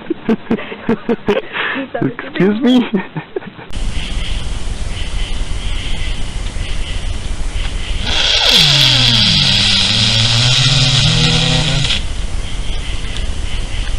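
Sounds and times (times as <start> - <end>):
steady hiss: 2.7 - 13.9
long loud fart: 8.0 - 12.0.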